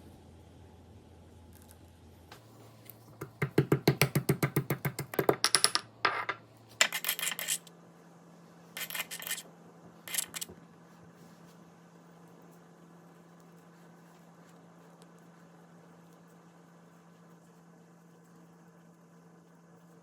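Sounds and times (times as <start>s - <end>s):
sharp knocks of kitchen chopping: 3.2s - 5.5s.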